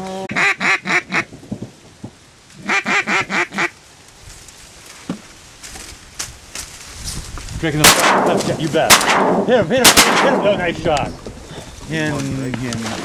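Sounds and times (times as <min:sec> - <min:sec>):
duck quacking: 0:00.3 - 0:01.3, 0:02.6 - 0:03.7.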